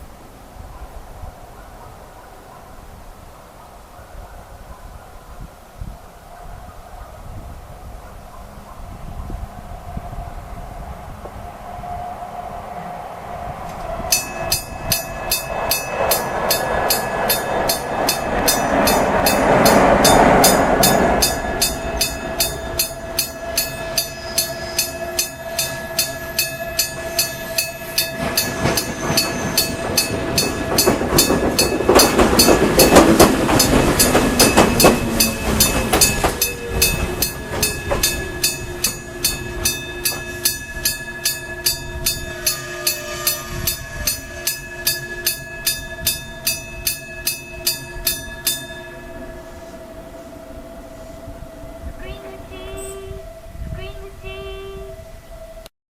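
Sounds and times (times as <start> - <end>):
train rumble and wheel clatter: 6.0 - 55.0
level-crossing gong striking: 14.1 - 53.4.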